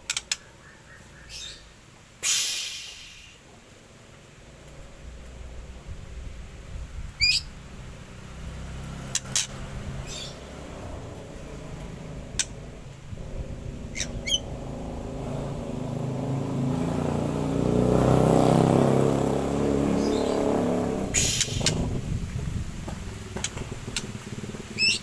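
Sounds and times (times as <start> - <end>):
bird chirping: 0.0 - 1.8, 7.2 - 17.0, 18.6 - 22.0, 24.7 - 25.0
motor vehicle passing: 4.2 - 25.0.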